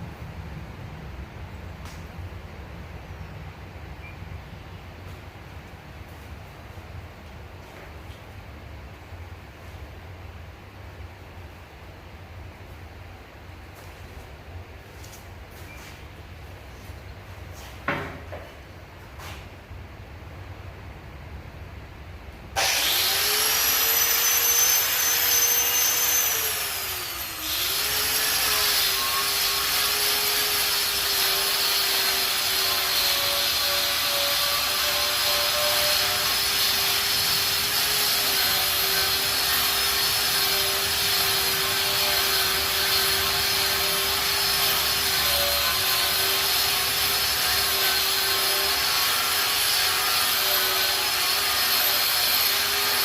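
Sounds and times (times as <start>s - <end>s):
angle grinder wire wheel whining: 22.6s - 53.0s.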